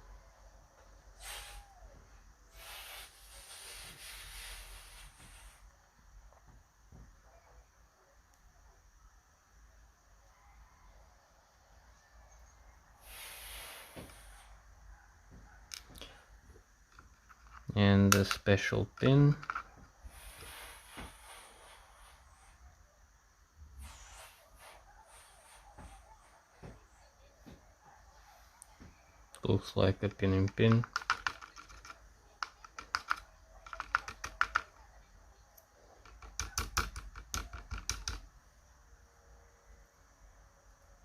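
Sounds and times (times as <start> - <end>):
faint room hum: 0.0 - 41.0
rustle of small lock parts: 30.5 - 34.1.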